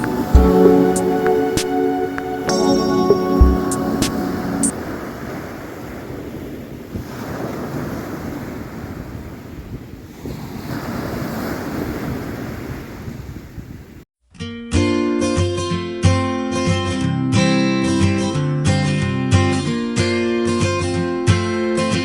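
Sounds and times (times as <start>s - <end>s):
waves washing onto shore: 0.0s - 13.6s.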